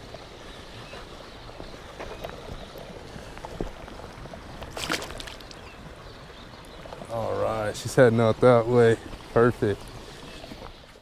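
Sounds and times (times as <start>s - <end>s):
stream water rushing: 0.0s - 11.0s
fish splashing: 2.3s - 6.0s.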